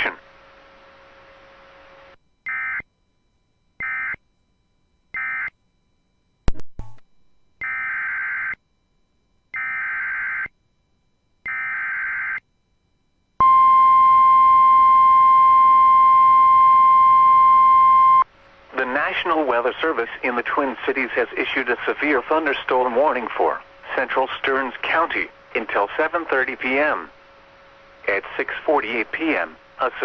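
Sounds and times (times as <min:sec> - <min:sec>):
steady warning alarm tone: 0:01.4 - 0:10.8, 0:11.4 - 0:18.3.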